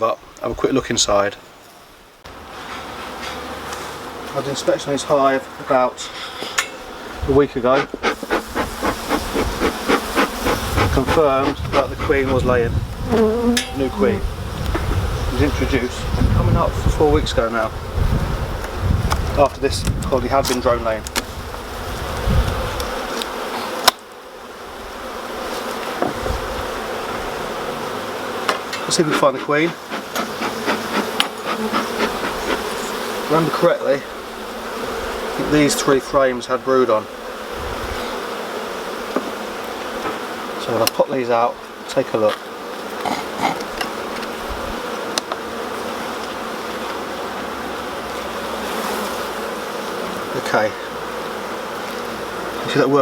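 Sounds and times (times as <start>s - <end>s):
bees buzzing: 2.2s - 19.0s, 20.7s - 53.0s
light clicks of hive frames: 18.6s - 21.3s, 28.4s - 33.0s, 39.1s - 41.1s, 45.1s - 45.5s.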